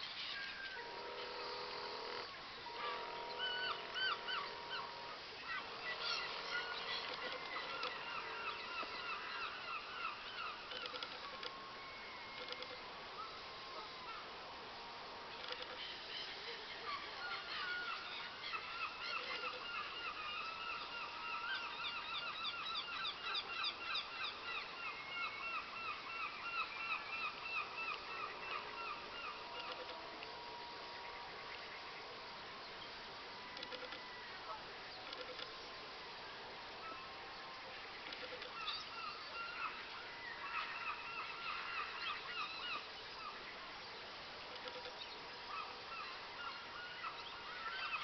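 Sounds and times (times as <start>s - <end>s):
birds calling: 0.0s - 48.0s
faint steady whine: 0.0s - 48.0s.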